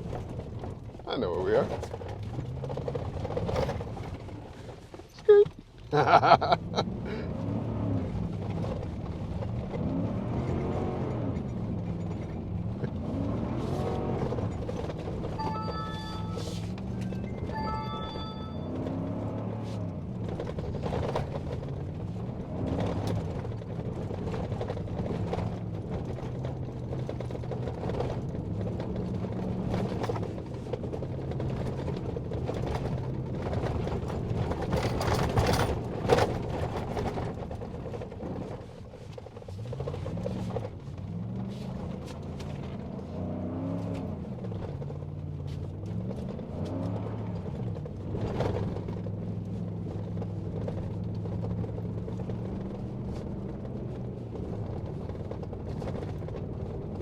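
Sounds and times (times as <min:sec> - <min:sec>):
vehicle engine driving: 0:00.0 - 0:57.0
knocks and rattles: 0:20.2 - 0:41.3.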